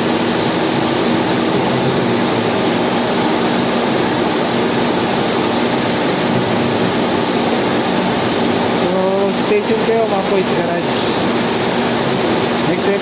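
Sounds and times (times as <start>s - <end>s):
loud rushing noise: 0.0s - 9.4s.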